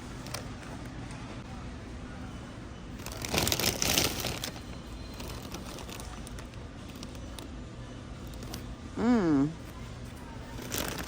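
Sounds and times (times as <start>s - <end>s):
low store background: 0.0s - 11.0s
plastic packaging crinkling: 3.0s - 7.2s, 10.6s - 11.0s.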